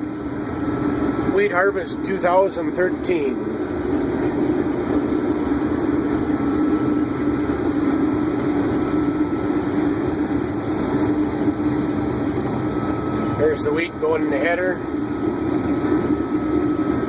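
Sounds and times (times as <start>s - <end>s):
faint higher machine tone: 0.0s - 3.6s, 6.2s - 10.3s, 11.1s - 17.0s
combine harvester drone: 0.0s - 17.0s.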